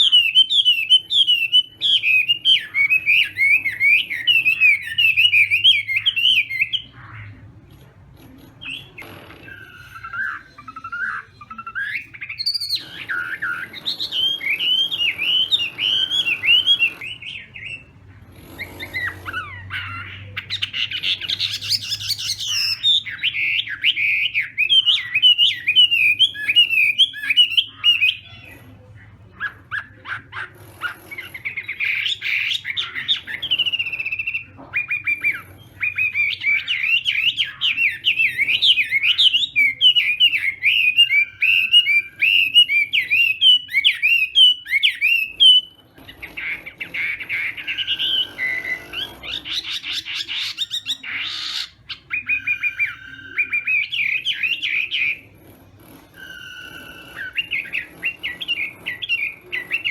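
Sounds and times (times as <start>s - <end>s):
bird singing whistled trills: 0.0s - 6.9s, 47.6s - 55.2s.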